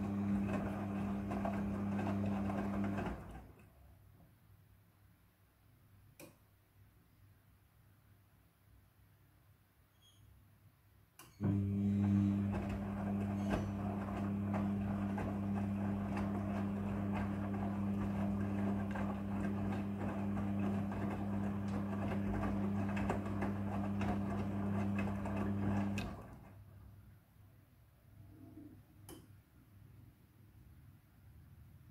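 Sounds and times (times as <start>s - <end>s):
washing machine hum: 0.0s - 4.0s, 11.4s - 27.1s.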